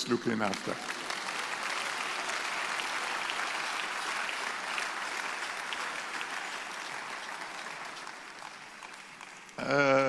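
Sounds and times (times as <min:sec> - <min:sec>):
congregation applauding: 0:00.0 - 0:10.0.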